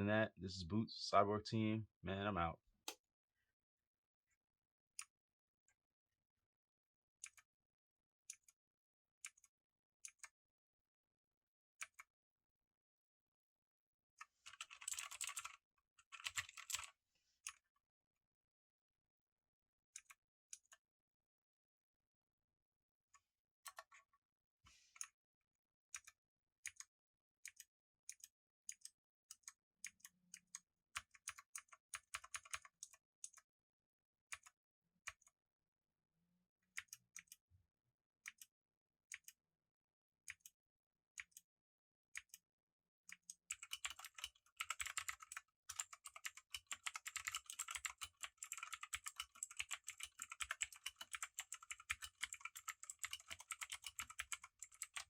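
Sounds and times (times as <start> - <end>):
clicky mechanical keyboard typing: 14.5 - 16.9, 43.2 - 55.0.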